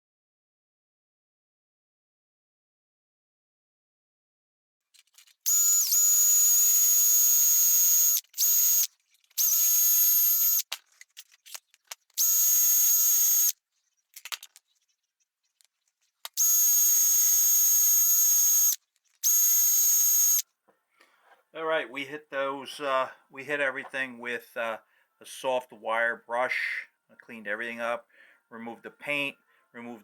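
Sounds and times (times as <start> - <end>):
wire brush tool whining: 5.3 - 13.6, 16.2 - 20.4.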